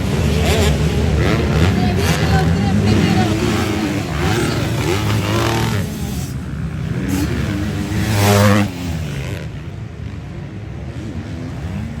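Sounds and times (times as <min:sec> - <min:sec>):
motocross bike engines revving: 0:00.0 - 0:12.0
motorbike passing close: 0:00.0 - 0:12.0.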